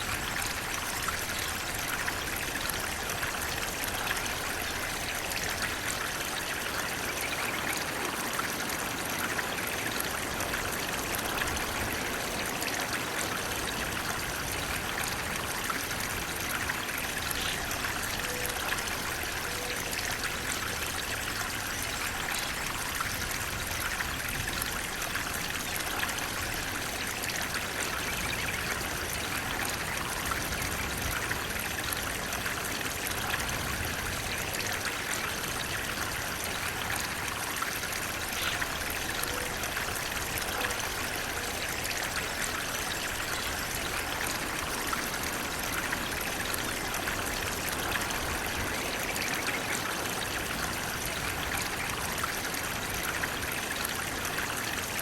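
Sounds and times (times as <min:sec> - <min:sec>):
water flowing steadily: 0:00.0 - 0:55.0.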